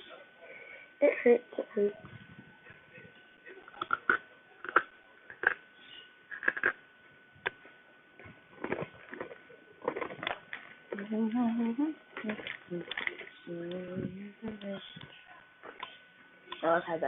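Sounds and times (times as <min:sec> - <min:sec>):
faint high whine: 0:00.0 - 0:17.0
crunching chips while chewing: 0:03.7 - 0:05.6, 0:06.3 - 0:06.8, 0:08.6 - 0:11.0.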